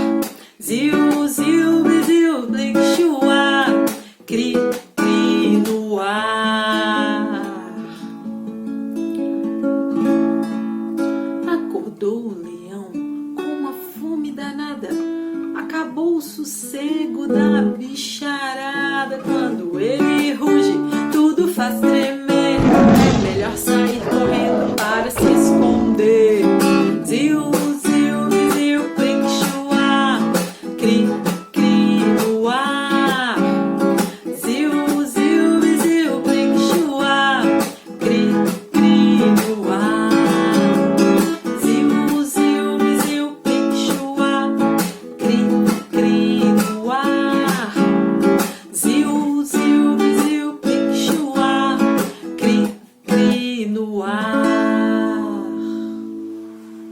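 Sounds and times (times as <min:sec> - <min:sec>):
lion roaring: 0:22.6 - 0:26.5
acoustic guitar strumming: 0:22.6 - 0:27.8
person singing: 0:22.6 - 0:33.5.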